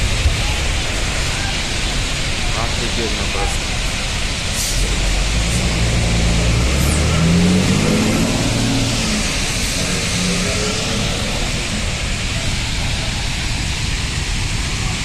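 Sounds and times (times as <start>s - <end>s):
large fire hissing: 0.0s - 15.0s
car engine accelerating: 4.7s - 13.8s.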